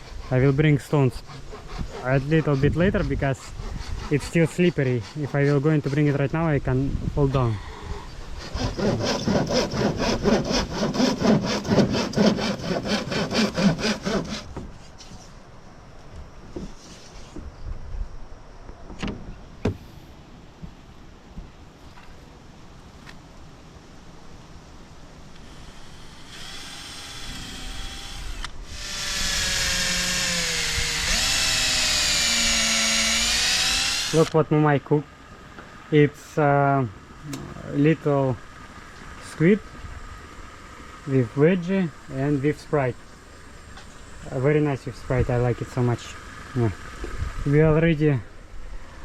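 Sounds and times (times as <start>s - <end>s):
hand saw cutting wood: 0.0s - 6.3s, 8.2s - 15.0s, 25.5s - 34.4s
electric drill whining: 25.4s - 34.3s.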